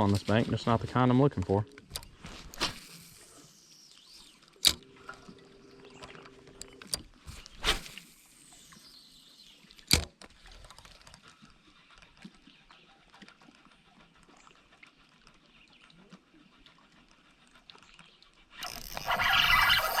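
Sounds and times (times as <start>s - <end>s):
fishing reel ticks and clicks: 1.9s - 5.3s, 18.6s - 20.0s.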